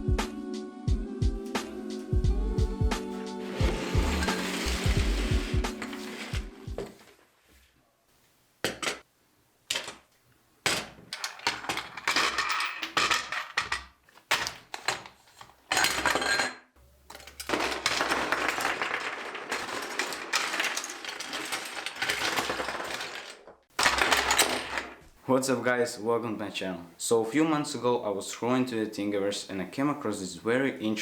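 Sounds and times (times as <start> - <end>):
small hard objects clattering: 3.4 - 6.5, 10.8 - 16.5, 17.1 - 25.1.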